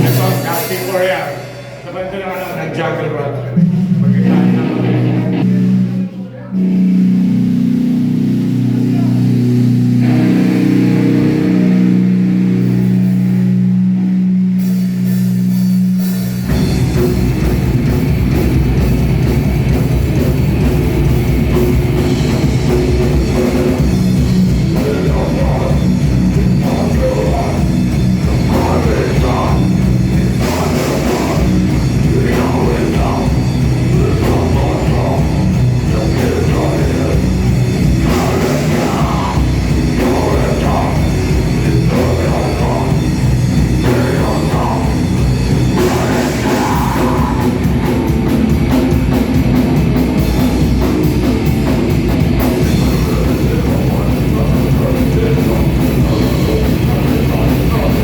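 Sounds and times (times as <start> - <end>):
distorted guitar riff: 0.0 - 2.7, 3.3 - 58.0
fast drums and bass: 0.0 - 58.0.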